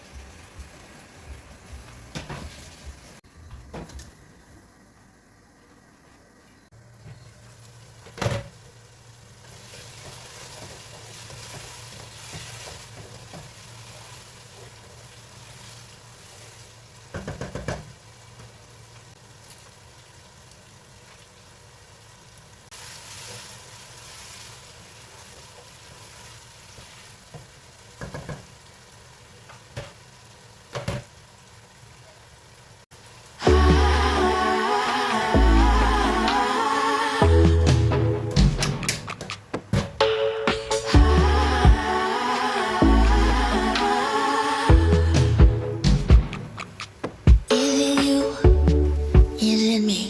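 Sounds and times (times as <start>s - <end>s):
food sizzling in a pan: 6.6s - 37.3s.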